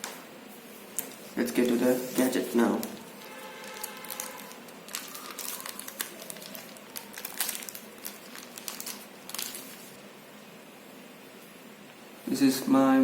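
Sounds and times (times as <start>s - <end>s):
packaging crinkling and clicking: 2.2s - 9.9s.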